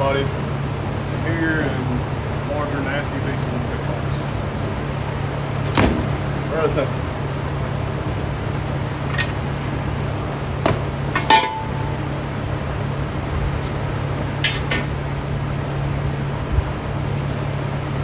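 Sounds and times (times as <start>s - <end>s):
loud low background hum: 0.0s - 18.0s
metal parts clinking: 1.4s - 2.1s, 9.0s - 9.9s, 10.6s - 12.2s.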